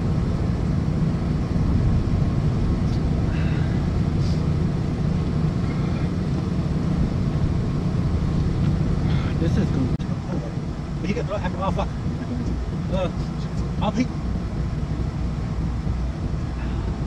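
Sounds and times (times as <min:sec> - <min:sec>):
vehicle engine rumble: 0:00.0 - 0:17.0.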